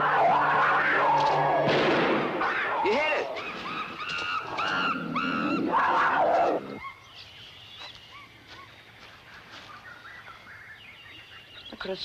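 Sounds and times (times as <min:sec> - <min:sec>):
loud rough animal cry: 0:00.0 - 0:06.9
birds chirping: 0:00.0 - 0:12.0.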